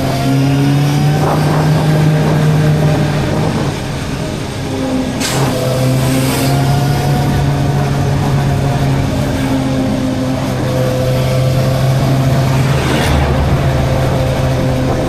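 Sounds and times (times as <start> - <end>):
wind rush: 0.0 - 15.0
motorcycle engine running: 5.4 - 15.0
brief whooshes: 12.0 - 15.0.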